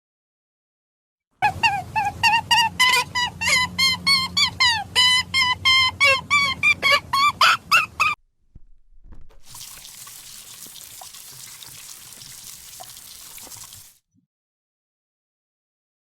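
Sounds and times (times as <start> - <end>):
water splashing hiss: 9.5 - 14.0.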